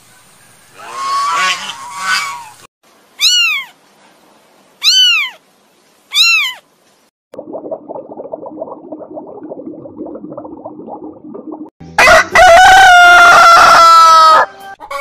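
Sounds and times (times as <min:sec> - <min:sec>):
high rising and falling animal calls: 0:00.7 - 0:03.8, 0:04.8 - 0:05.4, 0:06.1 - 0:06.6.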